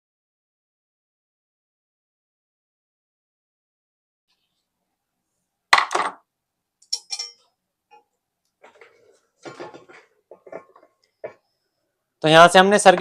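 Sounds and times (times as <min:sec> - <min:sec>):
metal clinks and rattles: 0:06.9 - 0:07.4
sharp metal clack: 0:06.9 - 0:07.4.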